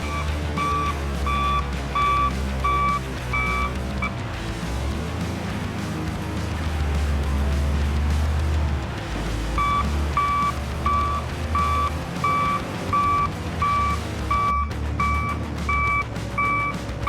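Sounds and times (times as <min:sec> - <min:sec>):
reversing alarm beeping: 0:00.0 - 0:03.8, 0:09.6 - 0:16.8.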